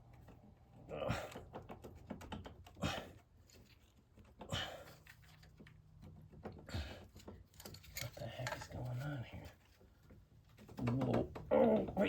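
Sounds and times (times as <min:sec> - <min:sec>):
person grunting: 0:00.9 - 0:01.4, 0:10.9 - 0:12.0
metal parts clicking and tapping: 0:01.3 - 0:09.2.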